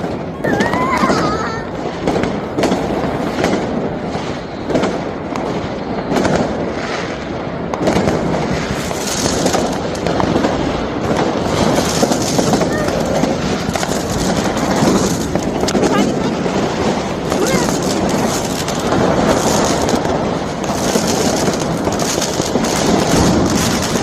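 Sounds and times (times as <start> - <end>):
firecrackers crackling: 0.0 - 24.0
fireworks bangs: 0.0 - 24.0.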